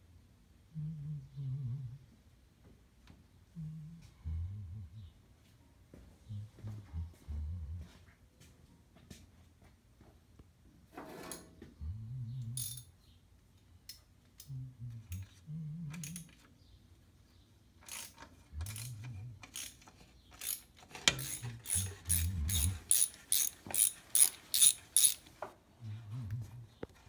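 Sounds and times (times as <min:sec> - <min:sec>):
ratchet wrench clicking: 0:17.8 - 0:25.3.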